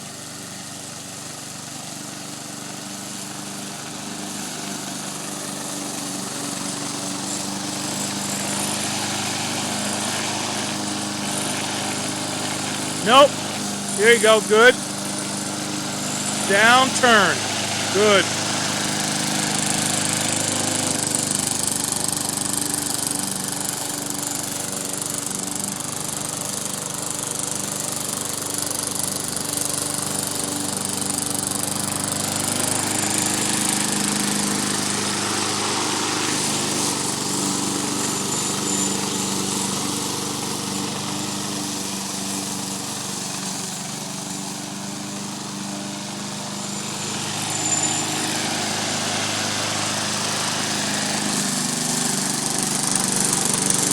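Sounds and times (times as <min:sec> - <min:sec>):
lawn mower engine running: 0:51.7 - 0:53.8.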